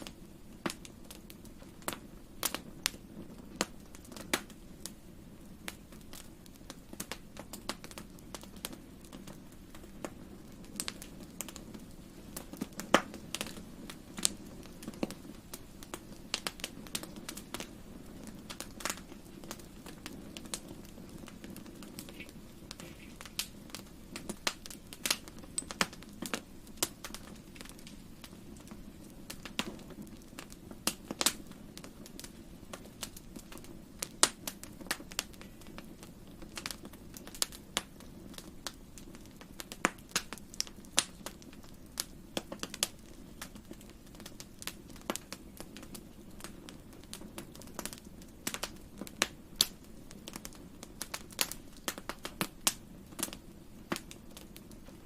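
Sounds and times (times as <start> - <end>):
fire crackling and popping: 0.0 - 55.0
low rumble of flames: 0.0 - 55.0.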